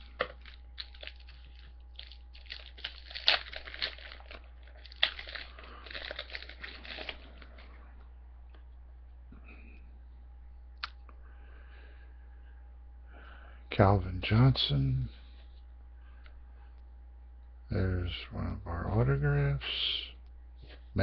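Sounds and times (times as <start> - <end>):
foil pack crinkling: 0.0 - 7.8
steady low hum: 0.0 - 21.0.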